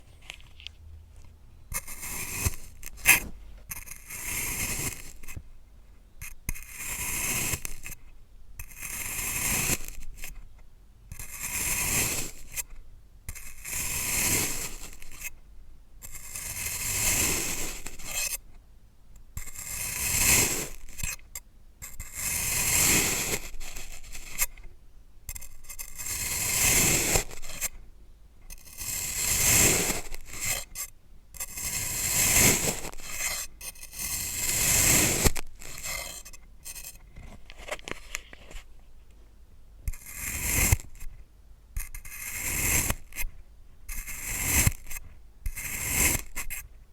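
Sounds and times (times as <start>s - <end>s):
blade slicing sand: 31.5s - 36.9s.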